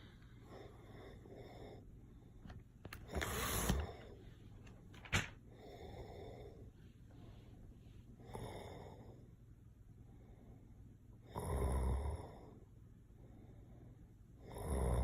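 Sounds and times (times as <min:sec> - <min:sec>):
man snoring: 0:11.3 - 0:12.5, 0:14.4 - 0:15.0.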